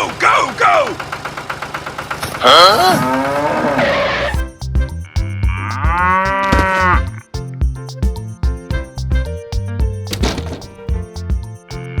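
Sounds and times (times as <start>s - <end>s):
cow mooing: 2.4s - 4.4s, 5.6s - 7.0s
light music with plucked beat: 4.4s - 12.0s.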